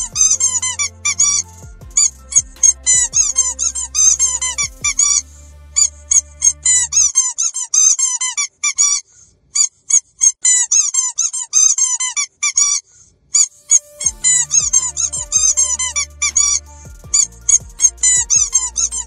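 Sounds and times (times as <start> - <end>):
squeaky dog toy squeaking: 0.0 - 5.2.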